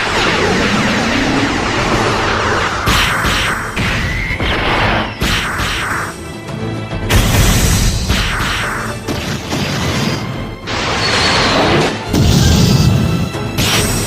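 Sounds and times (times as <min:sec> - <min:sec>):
rushes of noise: 0:00.0 - 0:05.2
film score music: 0:00.0 - 0:14.0.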